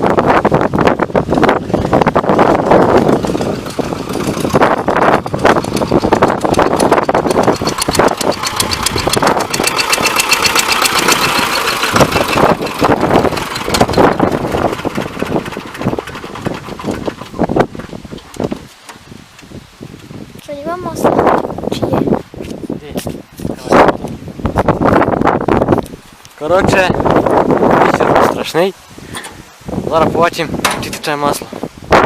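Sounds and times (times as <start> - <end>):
tractor diesel engine running: 0.0 - 21.2.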